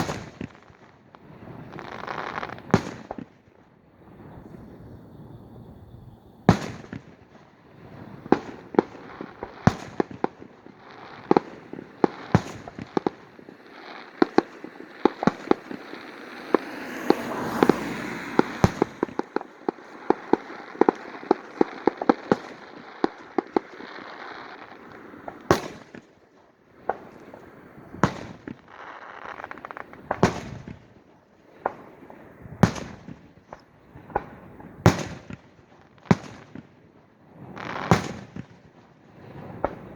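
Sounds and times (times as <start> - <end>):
fireworks bangs: 0.0 - 39.9
fireworks crackling: 0.0 - 39.9.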